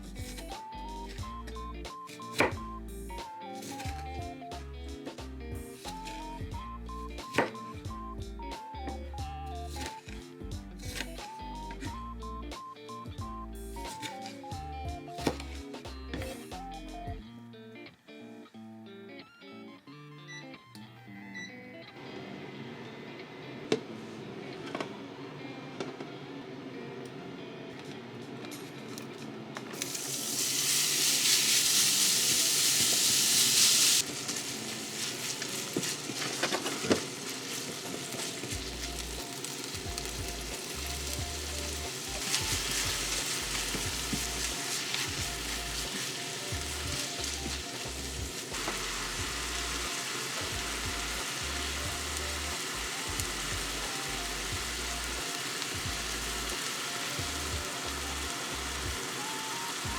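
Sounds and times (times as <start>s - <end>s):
faint background music: 0.0s - 59.9s
food sizzling in oil: 3.6s - 4.0s, 13.8s - 14.4s, 29.8s - 59.9s.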